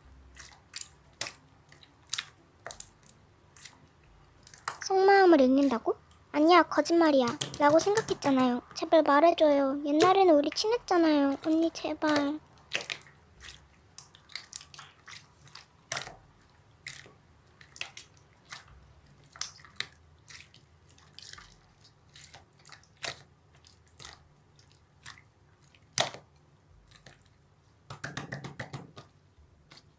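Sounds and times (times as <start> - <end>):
sharp clicks and taps: 7.0 - 8.5, 27.9 - 29.1.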